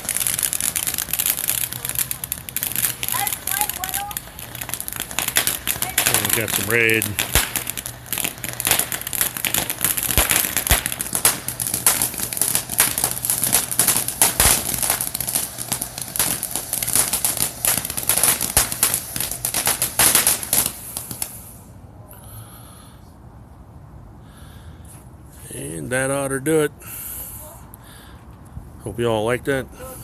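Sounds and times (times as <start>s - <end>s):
firework fountain crackling: 0.0s - 21.8s.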